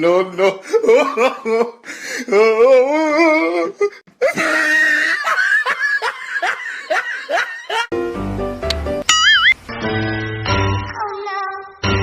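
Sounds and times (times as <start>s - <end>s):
person laughing hard: 3.3s - 7.9s
background music: 7.9s - 12.0s.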